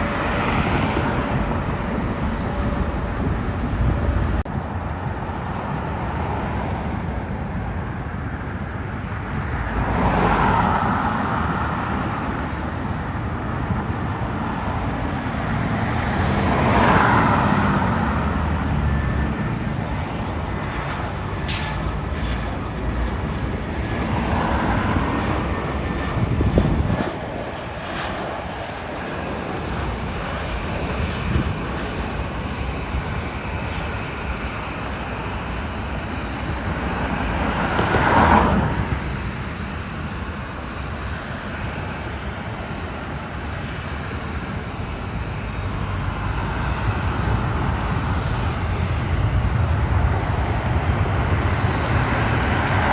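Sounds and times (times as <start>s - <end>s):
road traffic rumble: 0.0s - 52.9s
sharp click: 21.5s - 21.9s.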